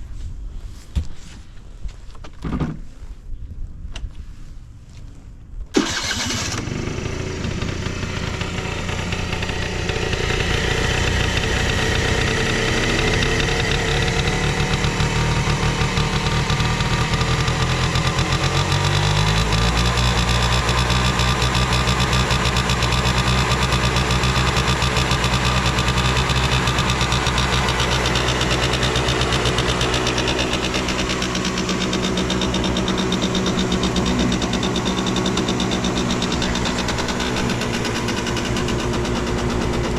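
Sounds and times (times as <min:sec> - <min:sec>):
scooter engine starting and idling: 0:05.8 - 0:39.9.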